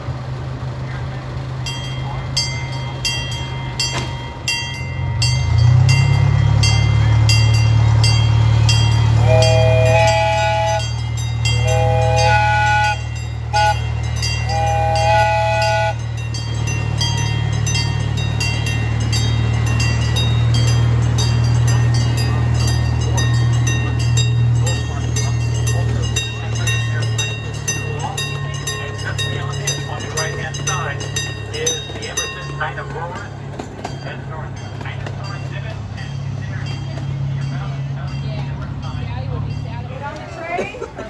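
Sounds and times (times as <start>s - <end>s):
locomotive engine drone: 0.0s - 41.0s
locomotive bell ringing: 0.3s - 41.0s
train chime horn: 2.1s - 33.3s.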